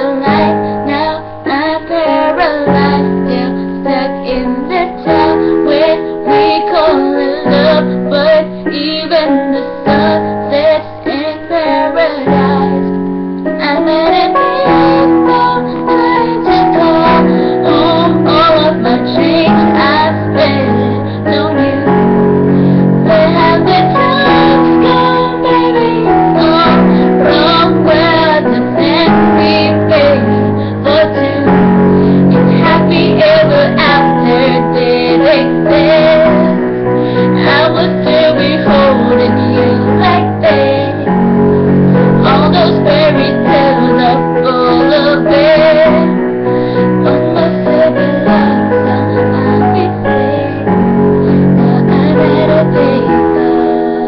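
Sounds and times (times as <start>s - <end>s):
young woman singing: 0.0s - 41.2s, 41.9s - 54.0s
keyboard: 0.0s - 54.0s
bass: 12.1s - 54.0s.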